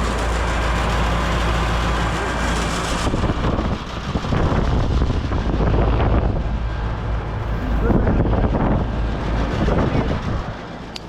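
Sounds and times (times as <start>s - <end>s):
air conditioner fan rush: 0.0s - 11.0s
wind on microphone: 2.9s - 10.8s.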